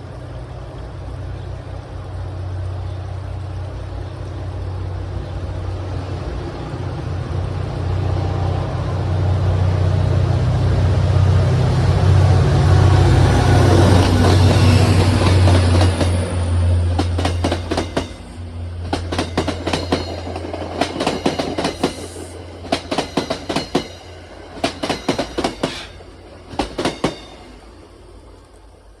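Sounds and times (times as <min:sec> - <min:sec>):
locomotive engine hum: 0:00.0 - 0:29.0
train wheels clicking over rail joints: 0:12.9 - 0:28.9.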